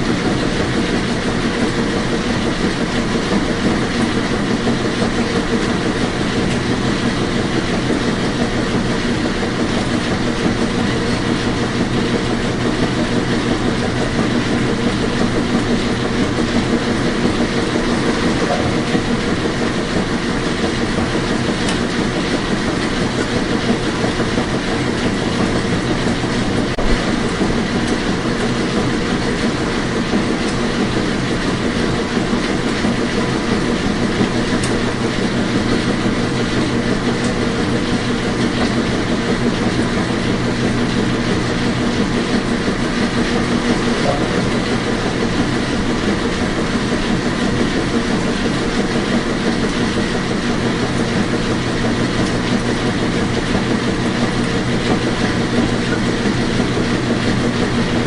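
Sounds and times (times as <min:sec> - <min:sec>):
washing machine humming: 0:00.0 - 0:58.0.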